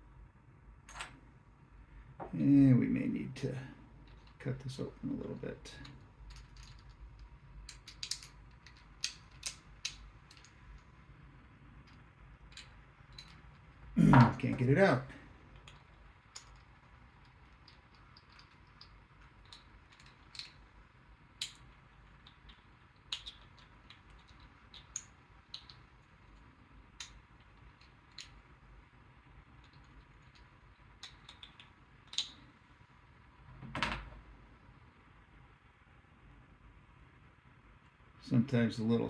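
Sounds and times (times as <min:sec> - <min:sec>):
plastic parts clicking and tapping: 0:05.8 - 0:10.8, 0:15.5 - 0:28.5, 0:29.5 - 0:32.4.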